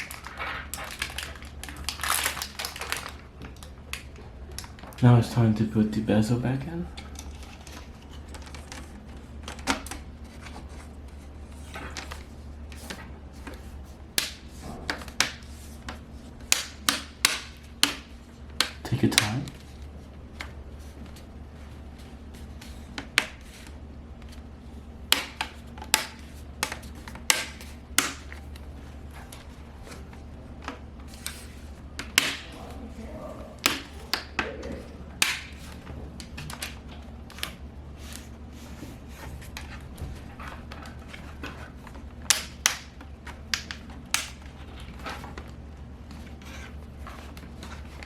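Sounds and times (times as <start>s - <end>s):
steady low hum: 0.0s - 48.0s.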